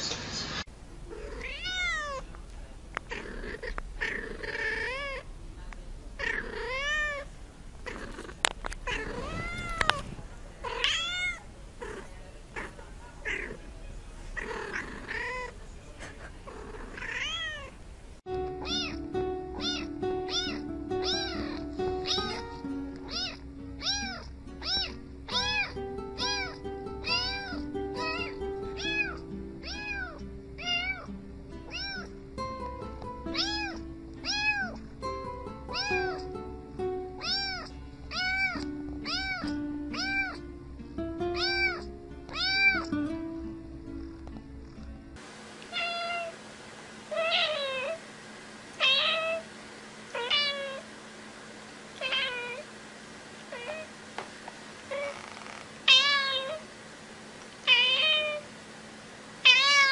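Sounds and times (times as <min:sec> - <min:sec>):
cat meowing: 0:01.1 - 0:02.3, 0:03.1 - 0:05.2, 0:06.2 - 0:07.3, 0:08.8 - 0:13.6, 0:14.4 - 0:15.6, 0:16.6 - 0:17.8, 0:18.6 - 0:19.0, 0:19.6 - 0:31.1, 0:31.7 - 0:32.1, 0:33.3 - 0:34.8, 0:35.7 - 0:36.3, 0:37.2 - 0:40.4, 0:41.4 - 0:42.9, 0:45.7 - 0:46.4, 0:47.1 - 0:48.0, 0:48.8 - 0:49.4, 0:50.1 - 0:50.9, 0:52.0 - 0:52.6, 0:53.5 - 0:53.9, 0:54.9 - 0:56.7, 0:57.7 - 0:58.4, 0:59.4 - 0:59.9
background music: 0:18.3 - 0:45.2.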